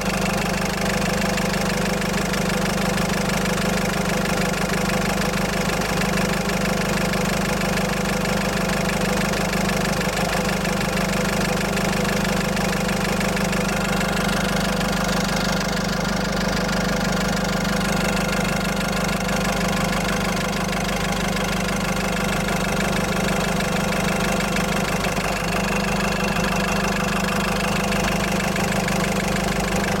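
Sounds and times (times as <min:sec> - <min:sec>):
car engine idling: 0:00.0 - 0:30.0
hollow engine noise: 0:13.5 - 0:30.0.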